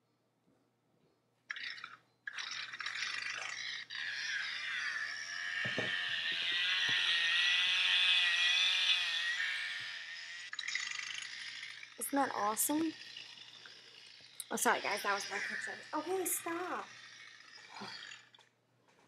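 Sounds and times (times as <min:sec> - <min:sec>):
chainsaw sound effect through small speaker: 0:02.4 - 0:18.4.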